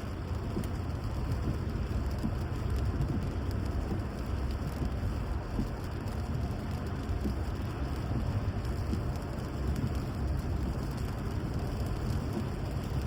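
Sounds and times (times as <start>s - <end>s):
light pattering ticks: 0.0s - 13.0s
steady rain: 0.0s - 13.0s.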